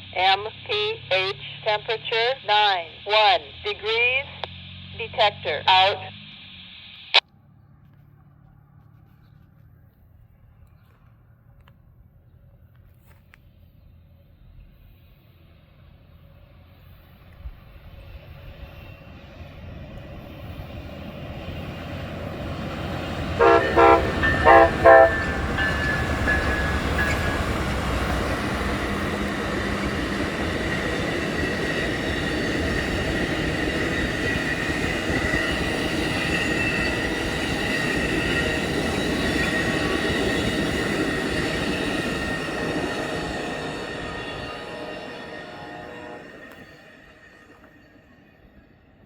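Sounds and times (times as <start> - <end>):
train wheels rumbling on rail: 7.7 - 49.0
high wheel squeal: 18.5 - 49.0
train horn blasts: 22.5 - 32.2, 42.3 - 47.7.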